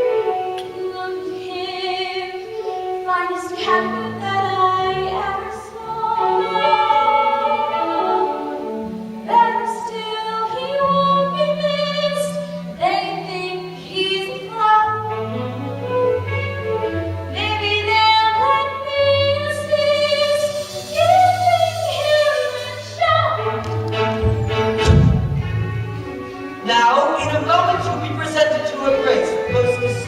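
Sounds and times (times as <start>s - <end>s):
instrumental accompaniment with bass: 14.9s - 30.0s.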